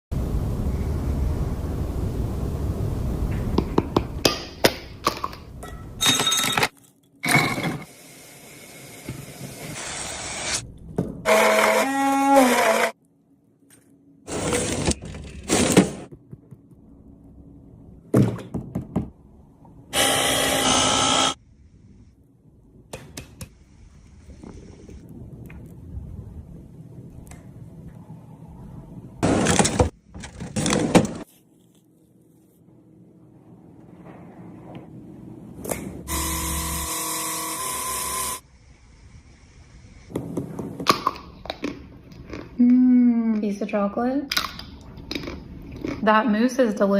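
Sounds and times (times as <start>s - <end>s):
low rumble: 0.1s - 4.2s, 23.6s - 29.2s
dishware and utensils clinking: 5.6s - 7.8s
small kitchen appliance motor: 36.1s - 38.4s.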